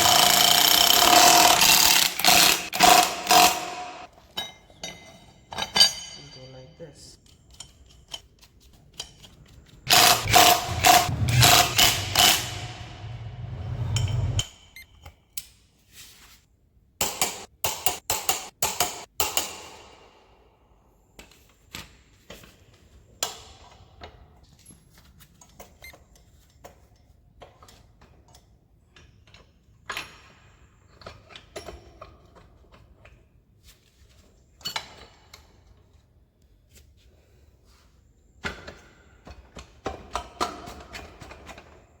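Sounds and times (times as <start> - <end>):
metal tools and parts clanking: 4.1 - 8.3
sharp metallic knocks: 9.9 - 14.5.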